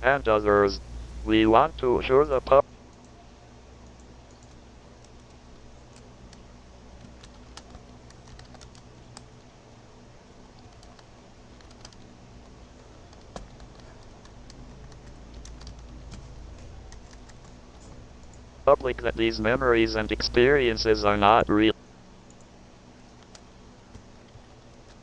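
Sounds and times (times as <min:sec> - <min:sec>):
steady low hum: 0:00.0 - 0:25.0
computer keyboard typing: 0:03.8 - 0:09.4, 0:10.4 - 0:19.0, 0:23.1 - 0:25.0.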